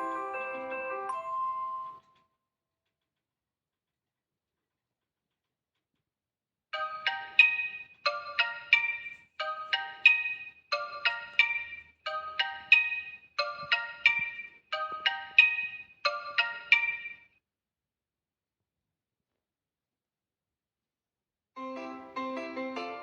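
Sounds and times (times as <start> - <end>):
phone alarm bell-like tone: 0.0 - 2.0.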